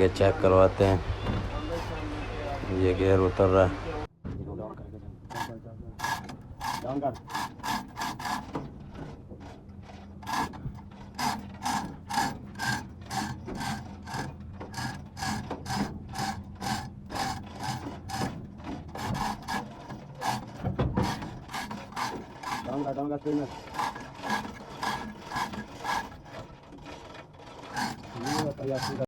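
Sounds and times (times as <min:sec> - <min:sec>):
ratchet clicking: 0:05.3 - 0:08.6, 0:10.2 - 0:22.9.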